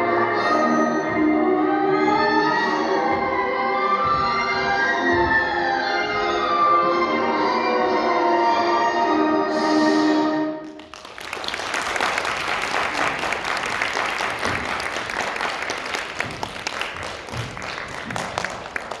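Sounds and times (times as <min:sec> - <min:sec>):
audience applauding: 0:10.6 - 0:19.0.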